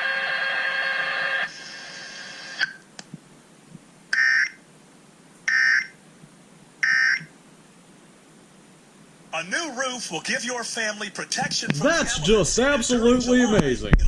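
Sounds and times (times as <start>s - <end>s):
loud steady tone: 6.8s - 7.3s
warbling data bursts: 6.8s - 7.3s.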